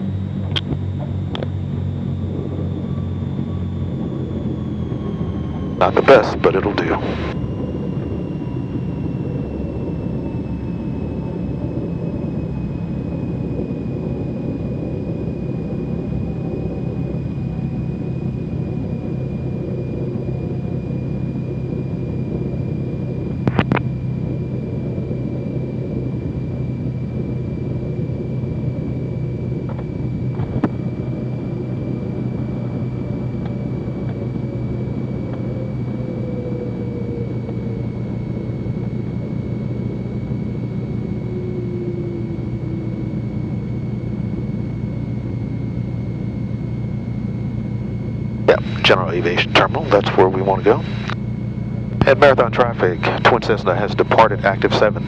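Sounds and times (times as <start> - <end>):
twin aircraft engines droning: 0.0 - 55.0
crackle: 23.3 - 24.0.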